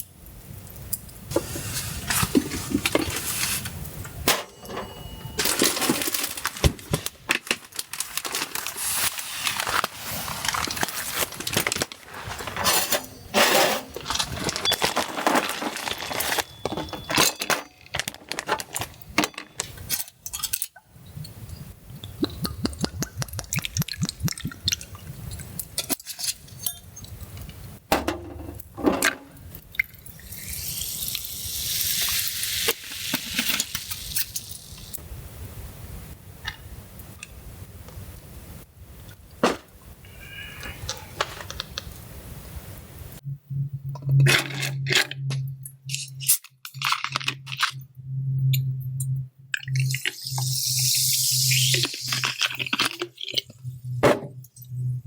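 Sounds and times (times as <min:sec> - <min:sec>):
metal cookware clinking and scraping: 0:04.2 - 0:06.5, 0:12.4 - 0:20.8
food sizzling: 0:30.2 - 0:35.1, 0:49.9 - 0:53.3.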